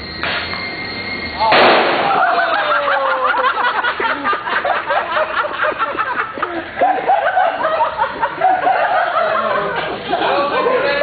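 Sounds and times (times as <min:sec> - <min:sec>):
men laughing and hooting: 0:01.4 - 0:11.0.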